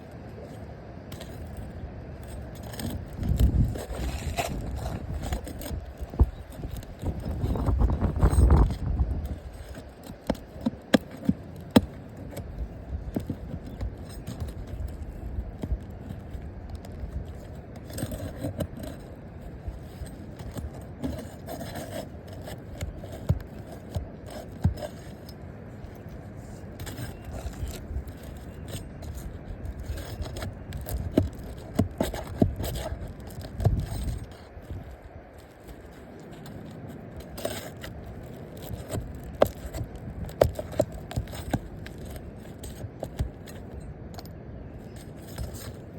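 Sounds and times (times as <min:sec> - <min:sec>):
roof shingles scraping and rustling: 0:00.4 - 0:43.9.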